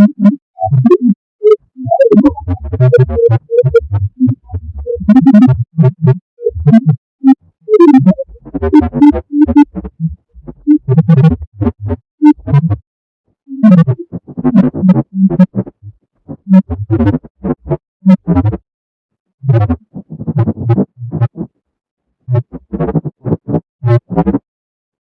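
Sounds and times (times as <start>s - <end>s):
choppy synthesizer notes: 0.0s - 7.0s, 7.7s - 12.8s.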